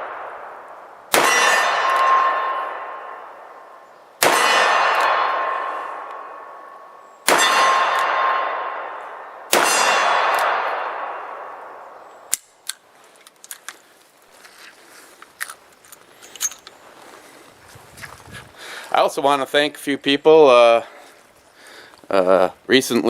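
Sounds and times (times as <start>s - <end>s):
steel target plate ringing: 1.1s - 3.6s, 4.3s - 11.8s.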